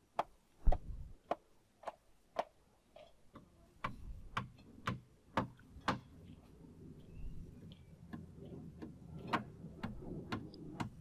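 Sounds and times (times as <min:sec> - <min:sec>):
hammer striking nails into wood: 0:03.8 - 0:06.1.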